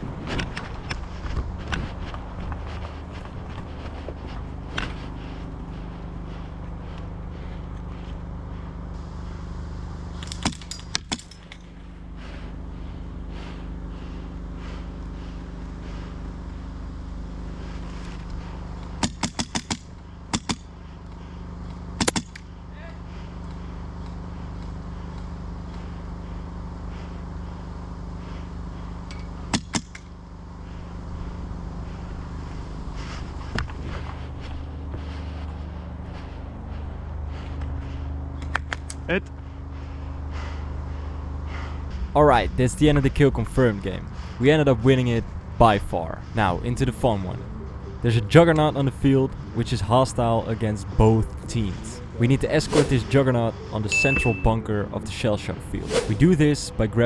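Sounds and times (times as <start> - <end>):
steady low hum: 0.0 - 57.0.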